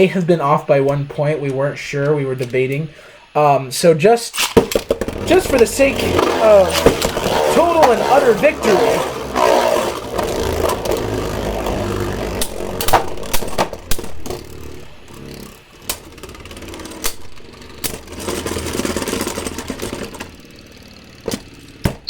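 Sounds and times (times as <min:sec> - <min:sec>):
rattling whir: 0:00.0 - 0:22.0
spinning tops whirring: 0:00.0 - 0:22.0
spinning tops clacking: 0:04.3 - 0:21.9.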